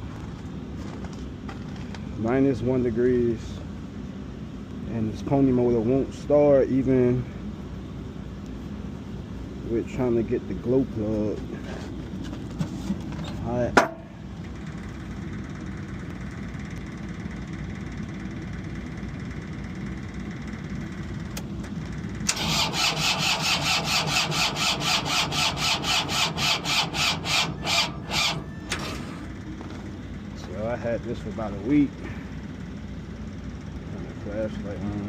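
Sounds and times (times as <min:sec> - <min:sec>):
low engine rumble: 0:00.0 - 0:35.0
starter cranking engine: 0:22.2 - 0:29.1.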